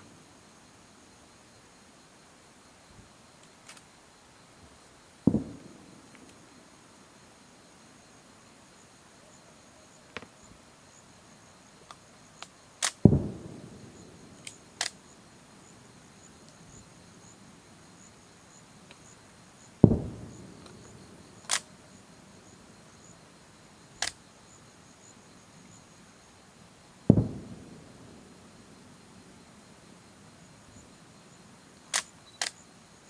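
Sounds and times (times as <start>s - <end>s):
deep firework booms with echo: 5.3s - 6.1s, 13.0s - 14.4s, 19.8s - 21.4s, 27.1s - 28.7s
firework cracks and pops: 5.3s - 6.4s, 11.9s - 15.0s, 19.8s - 21.7s, 27.1s - 28.3s.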